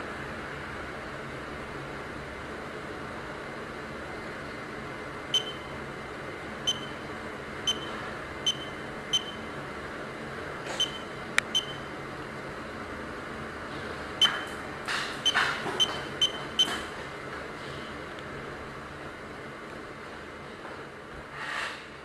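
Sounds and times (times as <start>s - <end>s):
high electronic beeps: 5.4s - 5.7s, 6.7s - 7.0s, 7.7s - 9.5s, 10.8s - 11.9s, 14.2s - 14.6s, 15.2s - 16.8s.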